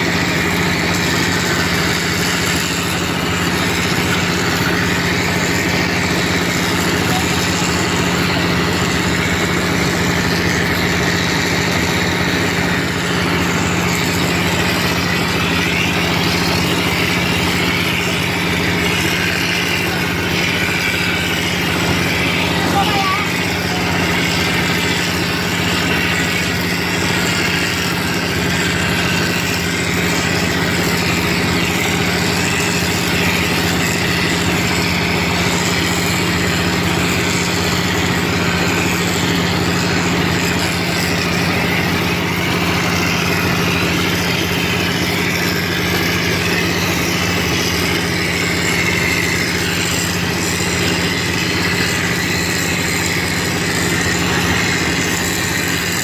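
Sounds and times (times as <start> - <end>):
machine motor humming: 0.0 - 56.0.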